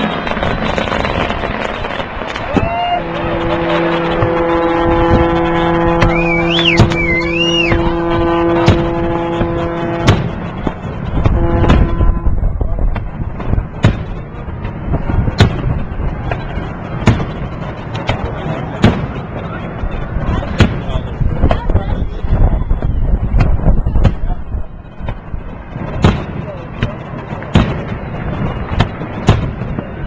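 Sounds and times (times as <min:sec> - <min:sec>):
low horn blast: 0:00.0 - 0:13.0
fireworks banging: 0:00.0 - 0:30.0
wavering high whistle: 0:06.0 - 0:07.9.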